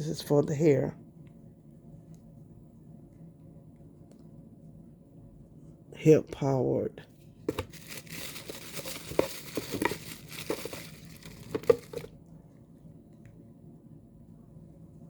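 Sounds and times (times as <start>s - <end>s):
packaging crinkling and rustling: 7.5s - 12.1s.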